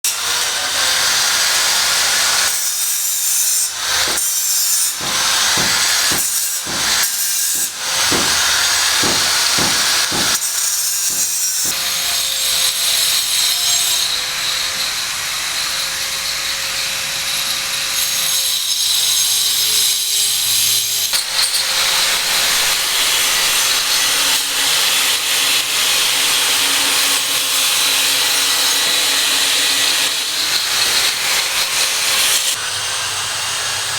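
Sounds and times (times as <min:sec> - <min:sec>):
power tool cutting hiss: 0:04.1 - 0:10.5.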